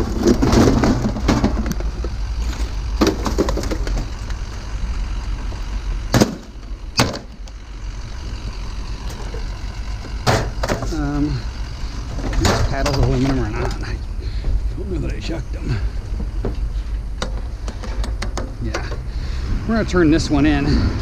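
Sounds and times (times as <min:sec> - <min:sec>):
scrap metal clanking: 0:00.0 - 0:04.5, 0:09.0 - 0:14.6
low engine rumble: 0:00.0 - 0:21.0.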